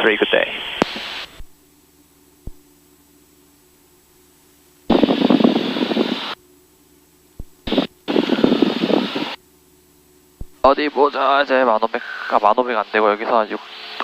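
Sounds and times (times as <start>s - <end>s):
aircraft radio reception bursts: 4.9s - 6.4s, 7.6s - 9.4s, 10.5s - 14.0s
faint engine hum through intercom: 10.7s - 14.0s.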